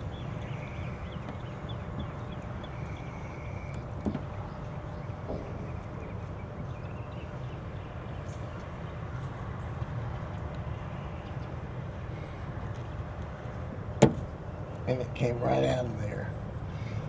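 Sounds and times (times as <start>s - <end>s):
low background rumble: 0.0s - 17.0s.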